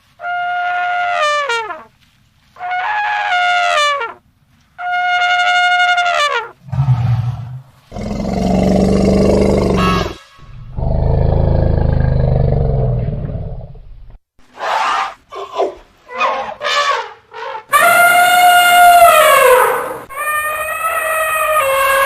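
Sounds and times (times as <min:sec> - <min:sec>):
deep low roar: 0:06.6 - 0:14.2
elephant trumpeting: 0:06.7 - 0:11.5, 0:14.6 - 0:22.0.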